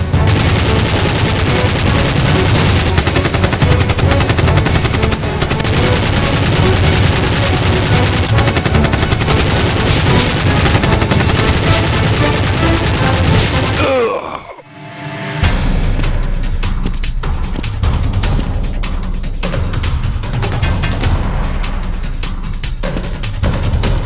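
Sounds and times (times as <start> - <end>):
automatic gunfire: 0.2 - 14.0.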